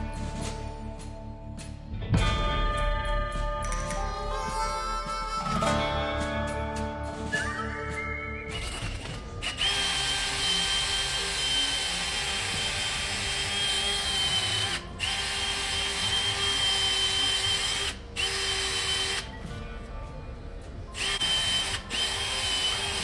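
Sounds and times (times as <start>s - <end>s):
power tool whining: 7.5s - 19.6s, 21.0s - 23.0s.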